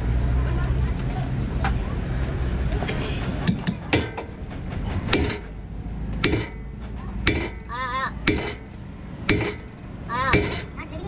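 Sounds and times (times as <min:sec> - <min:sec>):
hammer striking metal: 0:03.5 - 0:04.3, 0:05.1 - 0:05.6, 0:06.2 - 0:08.7, 0:09.3 - 0:10.8.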